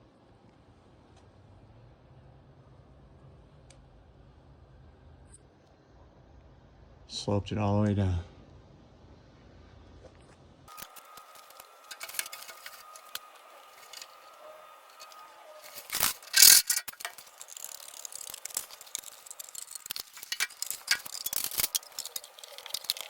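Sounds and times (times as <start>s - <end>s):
gutter clicks and rattles: 10.7s - 23.0s
loud scraping burst: 10.7s - 23.0s.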